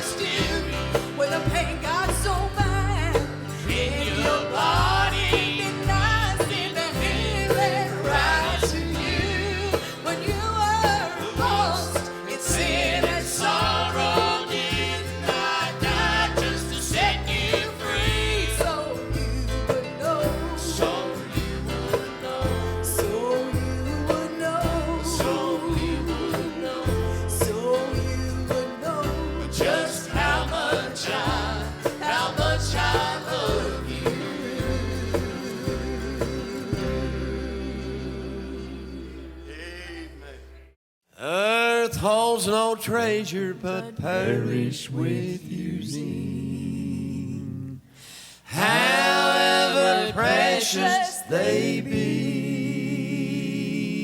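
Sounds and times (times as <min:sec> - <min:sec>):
instrumental accompaniment: 0:00.0 - 0:39.7
voices singing gospel: 0:00.0 - 0:40.6, 0:41.2 - 0:54.0
pulsing bass line: 0:00.0 - 0:40.7.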